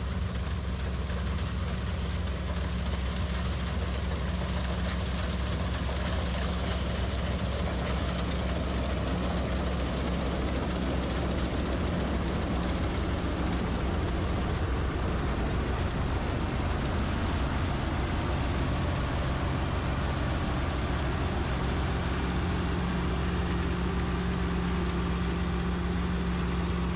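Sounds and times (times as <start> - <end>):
combine harvester diesel engine drone: 0.0 - 26.9
machinery rush: 0.4 - 26.1
steady low tone: 7.6 - 25.1.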